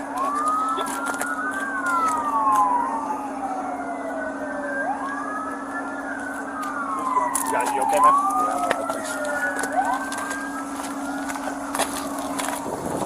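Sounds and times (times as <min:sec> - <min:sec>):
emergency sirens wailing: 0:00.0 - 0:13.0
steady low hum: 0:07.9 - 0:13.0.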